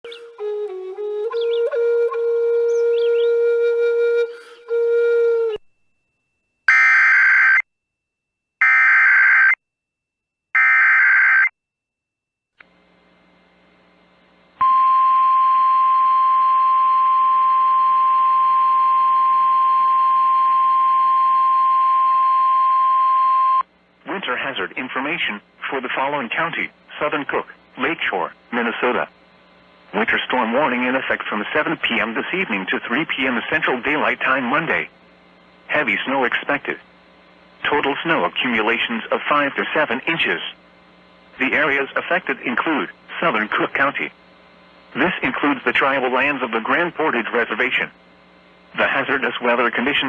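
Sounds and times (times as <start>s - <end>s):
music: 0.0s - 5.7s
steady warning alarm tone: 14.6s - 23.6s.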